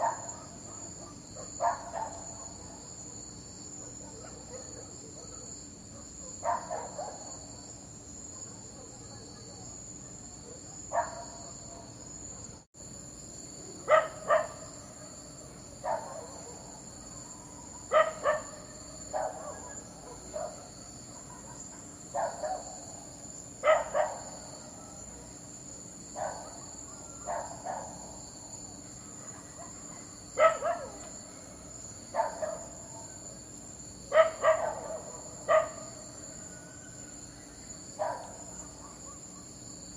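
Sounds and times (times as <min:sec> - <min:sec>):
dog barking: 0:00.0 - 0:07.4, 0:08.3 - 0:12.6, 0:13.8 - 0:15.2, 0:15.8 - 0:16.8, 0:17.8 - 0:22.9, 0:23.6 - 0:25.4, 0:26.1 - 0:28.2, 0:29.1 - 0:31.2, 0:32.1 - 0:33.1, 0:34.1 - 0:36.0, 0:38.0 - 0:39.5
crickets chirring: 0:00.0 - 0:39.9.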